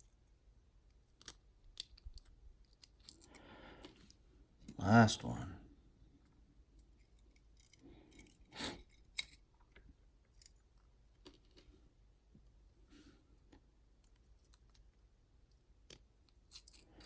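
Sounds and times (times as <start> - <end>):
small metallic clicks: 1.1 - 4.1.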